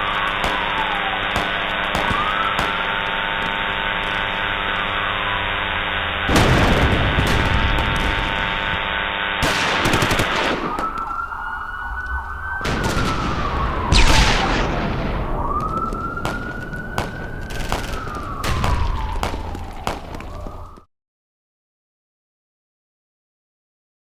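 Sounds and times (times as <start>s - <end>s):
gunshots: 0.0s - 5.6s, 6.3s - 11.6s, 12.6s - 20.8s
steady buzzing tone: 0.0s - 10.3s
police siren wailing: 0.0s - 20.9s.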